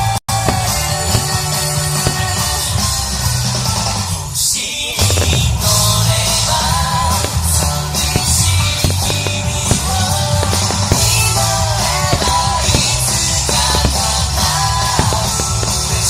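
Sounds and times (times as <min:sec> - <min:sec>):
bass guitar: 0:00.0 - 0:04.4, 0:05.0 - 0:16.0
steady drum beat: 0:00.3 - 0:03.9, 0:05.0 - 0:16.0
person singing: 0:04.4 - 0:16.0.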